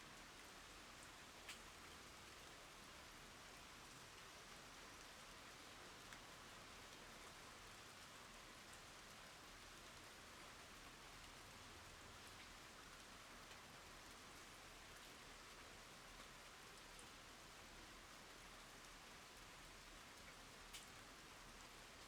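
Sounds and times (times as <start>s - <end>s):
rain on wooden boards and water: 0.1s - 22.0s.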